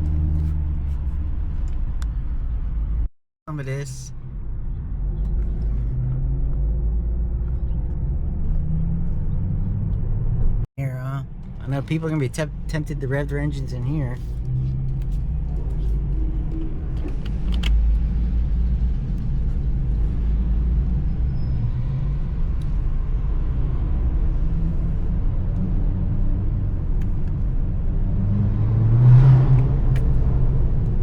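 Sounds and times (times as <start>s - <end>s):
car engine and road rumble: 0.0s - 31.0s.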